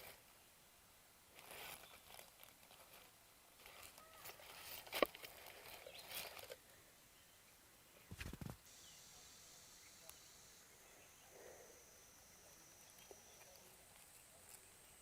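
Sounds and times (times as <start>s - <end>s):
rustling and crackling handling: 1.3s - 6.6s.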